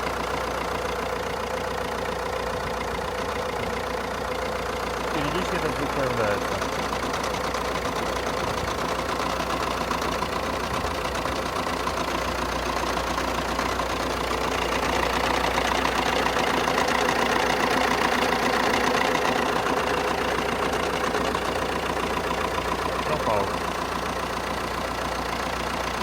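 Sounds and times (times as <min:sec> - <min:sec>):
diesel engine idling: 0:00.0 - 0:26.0
extraneous engine noise: 0:00.0 - 0:26.0.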